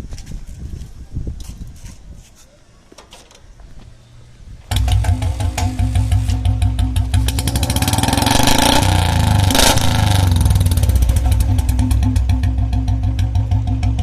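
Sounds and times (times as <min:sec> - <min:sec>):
motorcycle engine thumping and revving: 0:04.6 - 0:14.0
sharp exhaust burst: 0:04.7 - 0:14.0.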